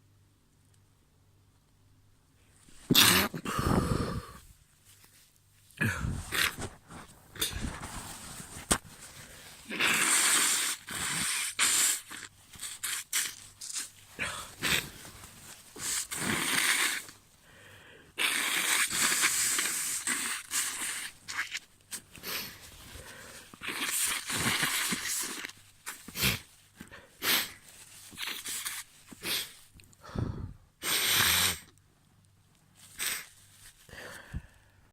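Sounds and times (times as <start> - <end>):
person blowing nose: 2.8 - 4.4, 5.8 - 17.2, 18.1 - 29.7, 30.8 - 31.7, 32.8 - 34.3
person sniffling: 2.8 - 4.5, 5.8 - 7.8, 14.1 - 21.2, 26.0 - 31.7, 32.9 - 34.6.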